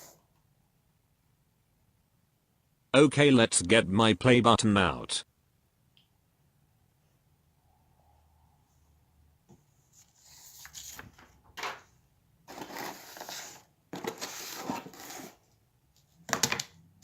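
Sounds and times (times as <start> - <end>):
packaging rustling and scraping: 12.5 - 15.5.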